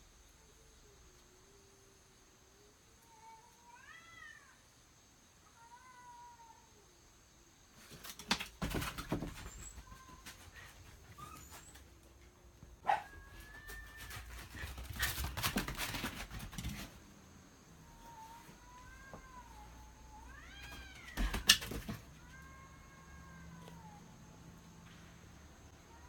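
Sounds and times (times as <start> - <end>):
cat meowing: 3.1 - 4.6, 17.9 - 21.4
dog barking: 12.8 - 13.1.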